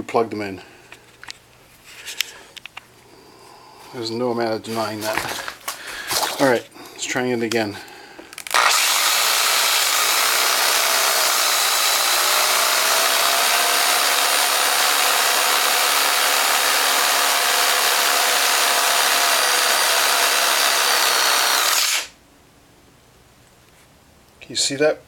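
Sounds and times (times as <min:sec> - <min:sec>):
reciprocating saw running: 0:08.4 - 0:22.2.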